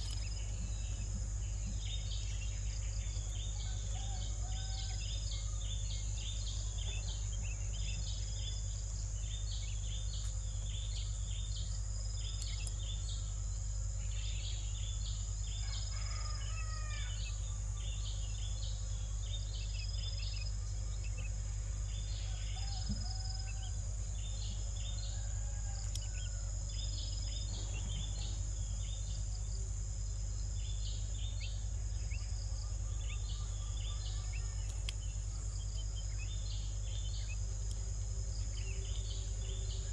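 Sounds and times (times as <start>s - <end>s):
constant low hum: 0.0s - 39.9s
insect chorus chirping: 0.0s - 39.9s
bird calls: 30.7s - 37.8s.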